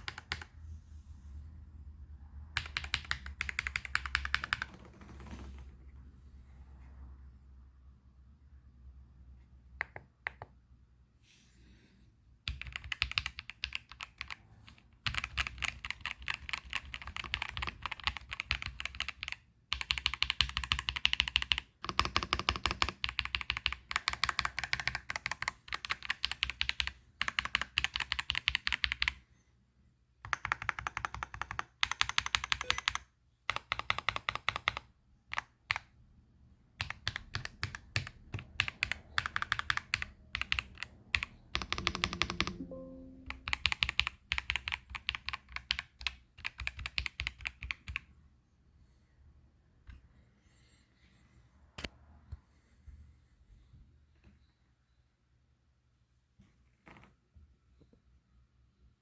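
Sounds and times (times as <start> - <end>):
mechanical keyboard typing: 0.0 - 0.6, 2.5 - 5.6, 12.4 - 29.2, 30.2 - 35.9, 36.7 - 48.1.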